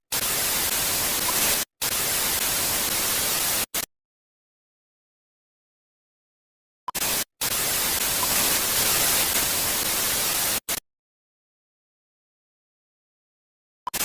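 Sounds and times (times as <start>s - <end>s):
tv static hiss: 0.1s - 3.9s, 7.0s - 10.8s.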